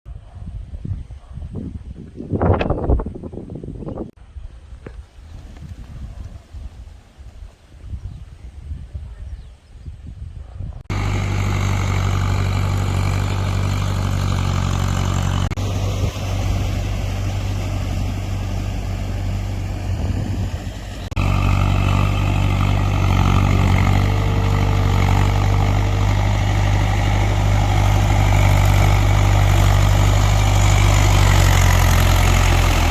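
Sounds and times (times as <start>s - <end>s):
farm machine engine running: 10.9s - 32.9s.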